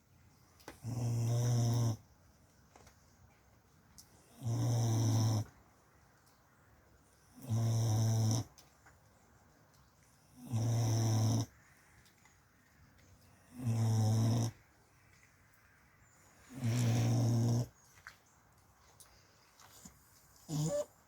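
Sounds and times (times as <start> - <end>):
low-pitched snoring: 0.8 - 2.0, 4.4 - 5.5, 7.4 - 8.5, 10.4 - 11.5, 13.5 - 14.6, 16.5 - 17.7.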